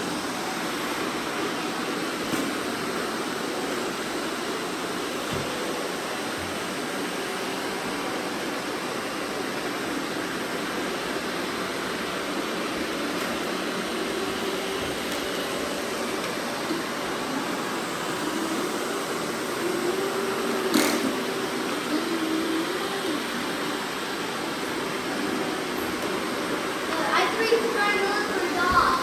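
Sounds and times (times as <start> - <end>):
robot vacuum cleaners running: 0.0 - 29.0.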